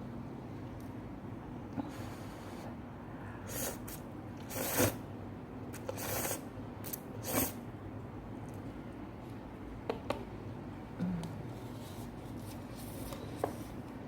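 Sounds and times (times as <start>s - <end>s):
steady low hum: 0.0s - 14.0s
hissy slurps or sniffs: 3.4s - 5.0s.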